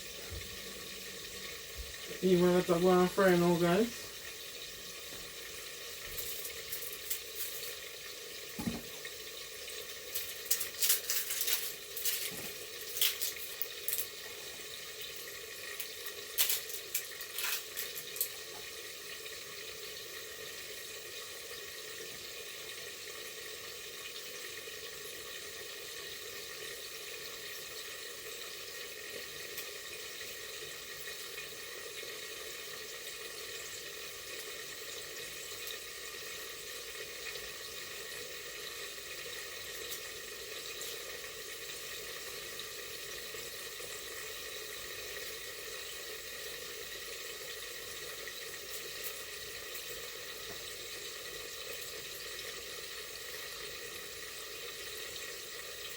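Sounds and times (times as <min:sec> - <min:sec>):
food sizzling in a pot: 0:00.0 - 0:55.9
sharp knocks and clatters: 0:08.6 - 0:08.9.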